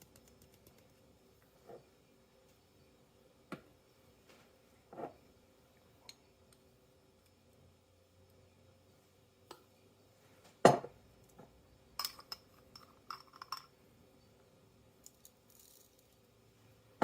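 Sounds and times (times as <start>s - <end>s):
glassy clinks: 12.0s - 13.7s.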